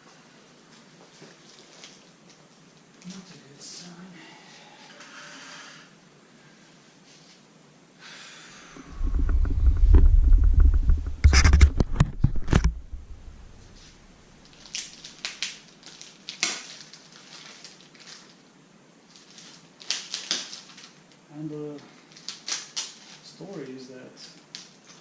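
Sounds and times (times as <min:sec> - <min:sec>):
heavy low rumbling knocks: 0:08.8 - 0:13.8.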